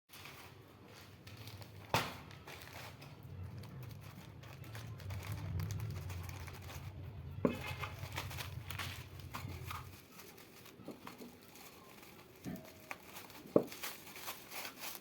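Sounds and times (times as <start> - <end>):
packaging crinkling: 0.1 - 15.0
low steady hum: 0.7 - 13.3.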